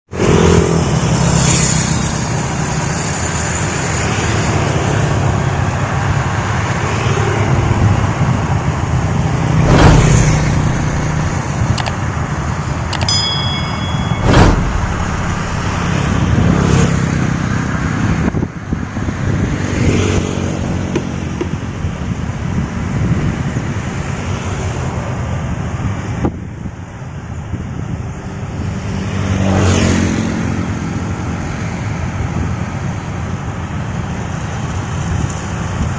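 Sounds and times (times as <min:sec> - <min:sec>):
combine harvester engine hum: 0:08.6 - 0:17.2
loud mechanical knocks: 0:09.6 - 0:12.1, 0:14.1 - 0:16.6
brief high-pitched tone: 0:12.9 - 0:16.5.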